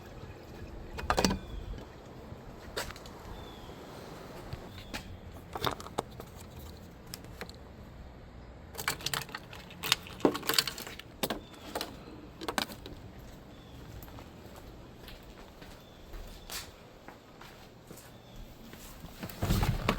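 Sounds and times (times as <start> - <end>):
metallic clinks and rattles: 8.8 - 13.0.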